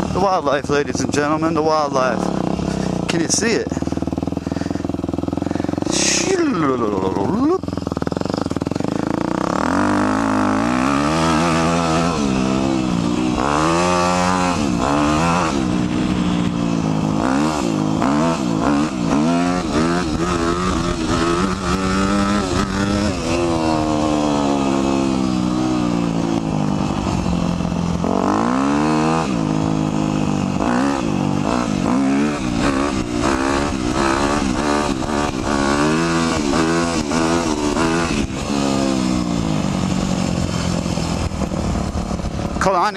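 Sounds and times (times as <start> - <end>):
dirt bike engine revving: 0.0 - 42.9.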